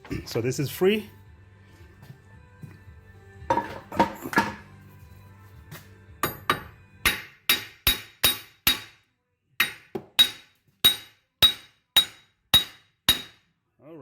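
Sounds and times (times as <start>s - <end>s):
hammer striking steel: 6.2s - 9.0s, 9.6s - 13.4s.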